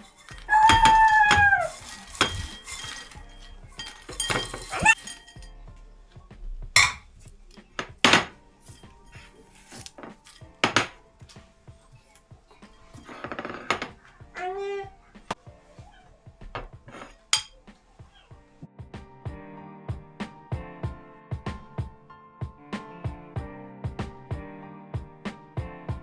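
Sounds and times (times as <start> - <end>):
dishes and cutlery clinking: 0.0 - 5.6, 6.8 - 18.4
faint background music: 0.0 - 26.0.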